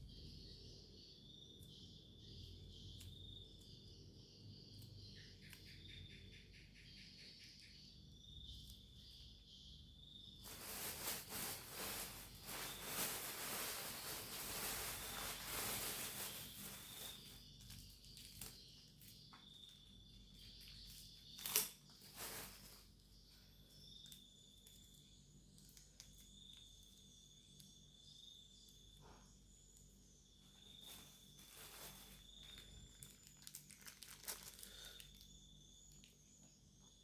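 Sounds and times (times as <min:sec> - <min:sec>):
crickets chirring: 0:00.0 - 0:37.0
plastic packaging crinkling: 0:10.4 - 0:19.1, 0:20.6 - 0:22.9, 0:30.8 - 0:35.3.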